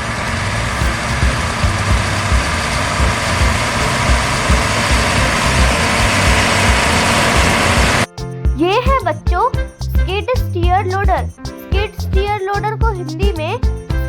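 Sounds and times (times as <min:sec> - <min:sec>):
heavy diesel engine running: 0:00.0 - 0:08.1.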